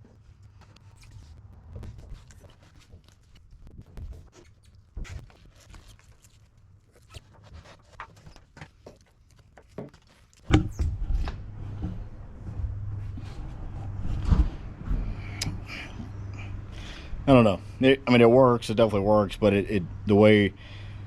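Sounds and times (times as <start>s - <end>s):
low rumble: 10.6s - 17.8s.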